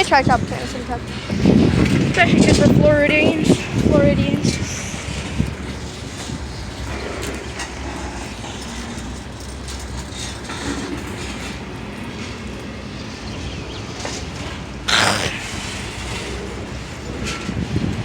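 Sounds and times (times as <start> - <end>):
train wheels rumbling on rails: 0.0 - 18.0.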